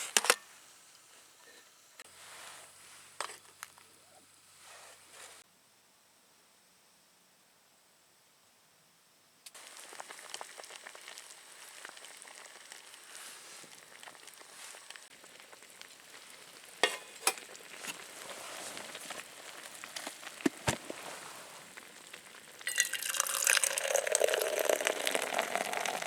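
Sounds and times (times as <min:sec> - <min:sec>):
food sizzling in frying pan: 0:09.5 - 0:26.0.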